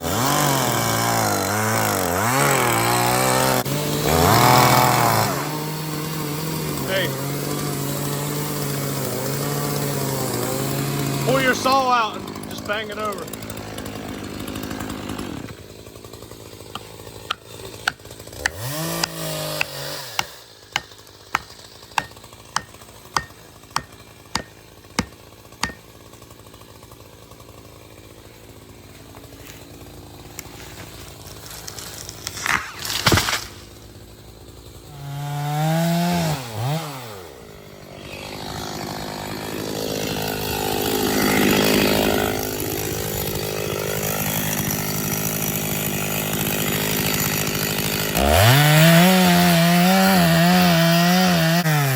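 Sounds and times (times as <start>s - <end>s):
chainsaw cutting wood: 0.0s - 51.9s
chainsaw revving: 0.0s - 51.9s
sharp knocks: 16.7s - 25.8s.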